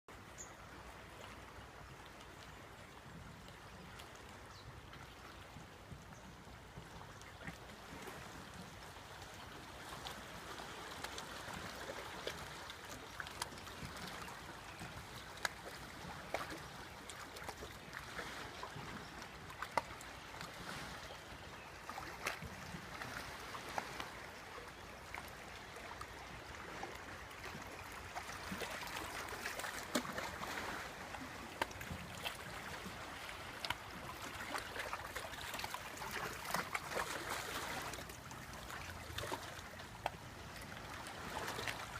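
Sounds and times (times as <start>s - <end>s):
seawater lapping and splashing: 0.5s - 41.9s.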